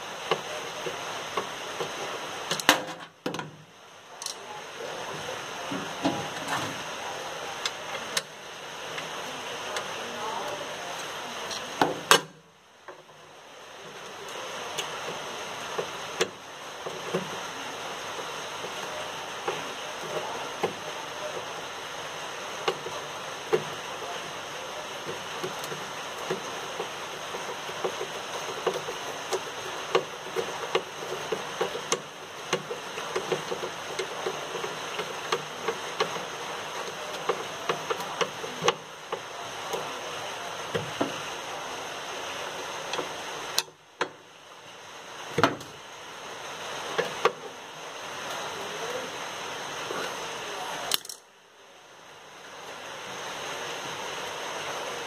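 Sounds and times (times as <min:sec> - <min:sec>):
steady hiss: 0:00.0 - 0:55.0
parts and tools knocking: 0:25.4 - 0:39.3.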